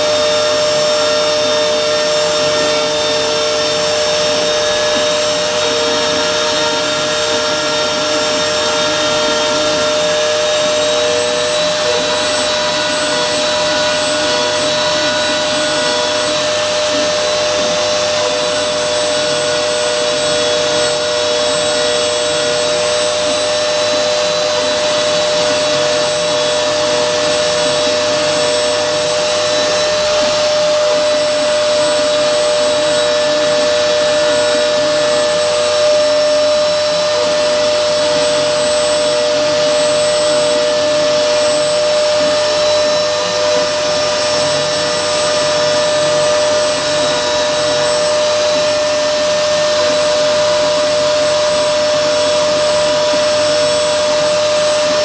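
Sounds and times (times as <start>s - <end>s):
router spindle whining: 0.0s - 55.0s.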